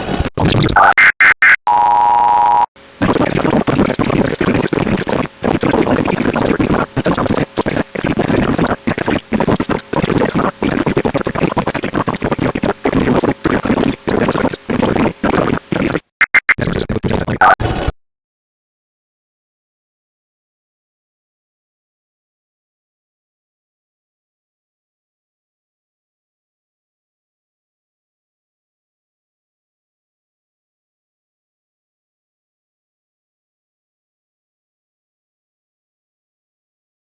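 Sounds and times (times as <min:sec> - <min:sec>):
choppy crackling noise: 0:00.0 - 0:17.9
warbling digital data bursts: 0:00.4 - 0:01.6, 0:16.2 - 0:17.6
steady electronic tone: 0:00.4 - 0:03.2.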